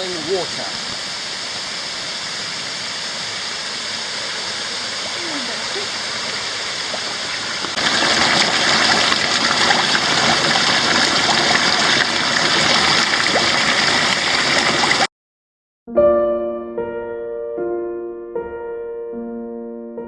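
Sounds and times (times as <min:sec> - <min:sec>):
waterfall and creek gurgling: 0:00.0 - 0:15.1
piano notes: 0:15.9 - 0:20.0.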